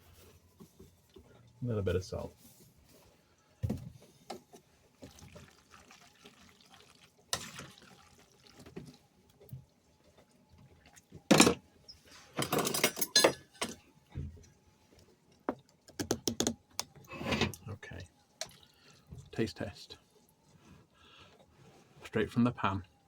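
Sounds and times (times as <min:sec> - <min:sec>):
wet stirring in saucepan: 0:04.4 - 0:12.4, 0:18.1 - 0:22.2.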